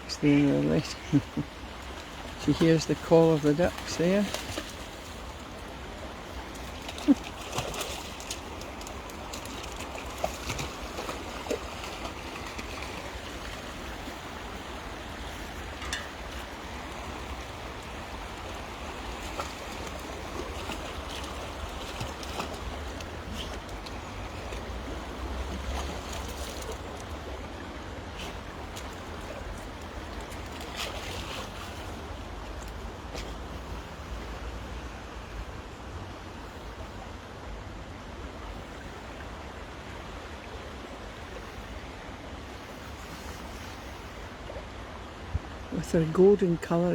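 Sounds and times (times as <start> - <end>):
rain: 0.0 - 35.4
river water rushing: 0.0 - 46.9.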